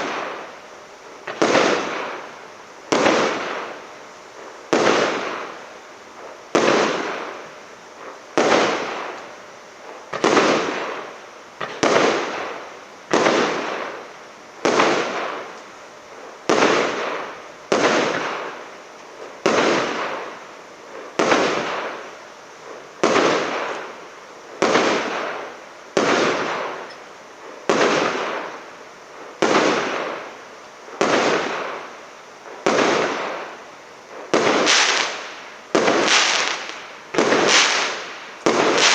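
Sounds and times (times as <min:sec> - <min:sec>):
firework bangs: 0:00.0 - 0:38.9.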